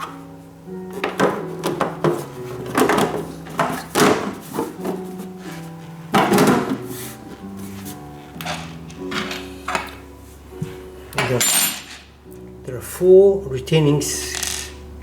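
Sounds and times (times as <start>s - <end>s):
soft background music: 0.0s - 15.0s
treadmill cover knocking and scraping: 0.8s - 10.0s.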